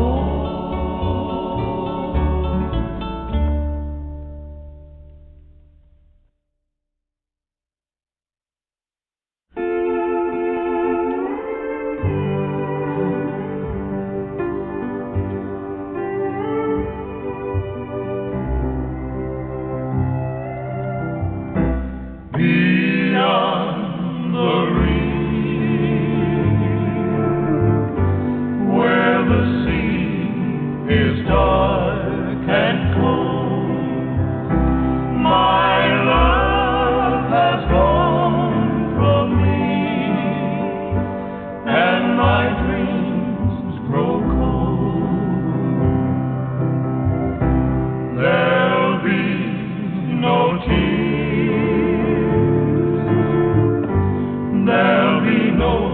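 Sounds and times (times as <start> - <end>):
person singing: 0.0 - 2.7, 22.4 - 34.4, 35.0 - 41.0, 41.6 - 46.3, 48.1 - 55.9
bass line: 0.0 - 6.3, 24.4 - 55.9.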